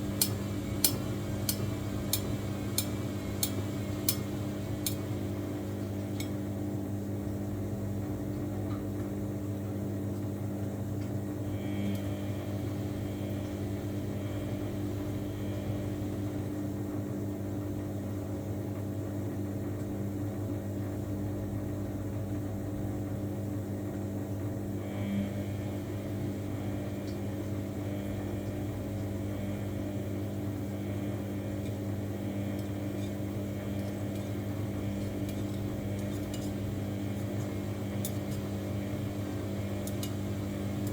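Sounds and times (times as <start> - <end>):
washing machine motor hum: 0.0 - 40.9
faint high whir: 11.4 - 16.5, 24.7 - 40.9.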